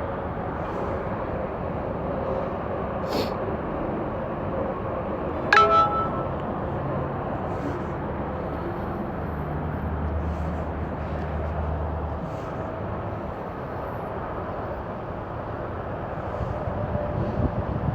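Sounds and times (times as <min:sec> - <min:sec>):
bright ringing ding: 0:05.6 - 0:06.5.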